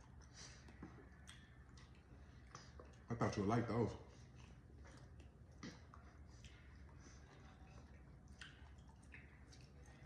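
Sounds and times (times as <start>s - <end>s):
wet mouth clicks chewing fruit: 0.0s - 3.1s, 4.2s - 10.0s.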